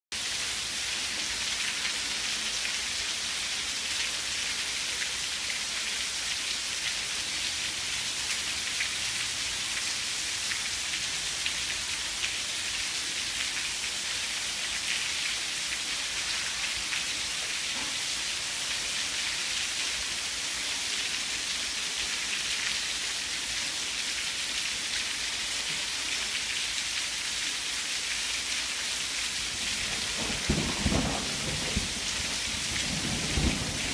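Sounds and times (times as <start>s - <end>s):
heavy rain pouring: 0.2s - 33.9s
raindrops ticking on surfaces: 21.1s - 33.9s.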